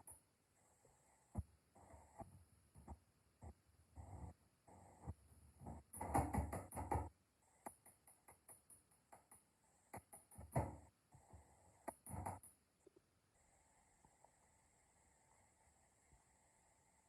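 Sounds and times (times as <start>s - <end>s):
small clicks and taps: 5.6s - 11.2s, 11.8s - 13.0s.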